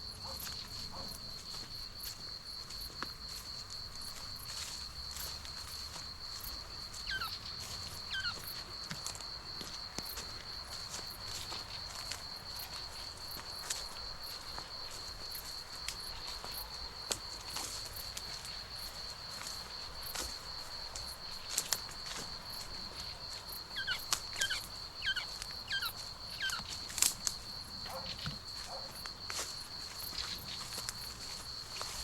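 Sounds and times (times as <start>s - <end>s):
footsteps crunching on dry grass: 0.0s - 32.0s
high-pitched insect trill: 4.4s - 9.7s, 21.1s - 32.0s.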